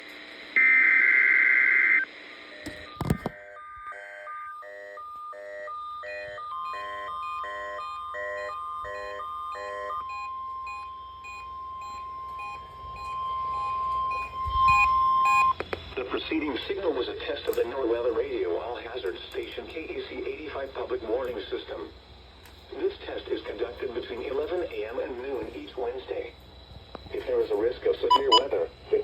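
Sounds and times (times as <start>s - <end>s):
two-tone alarm beeping: 0.6s - 15.6s, 28.1s - 28.5s
burst of digital header tones: 28.1s - 28.5s.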